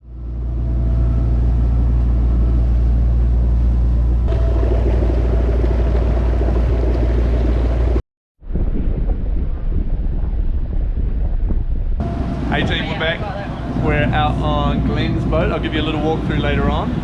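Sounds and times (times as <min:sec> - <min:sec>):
boat engine drone: 0:00.2 - 0:08.0, 0:12.0 - 0:17.0.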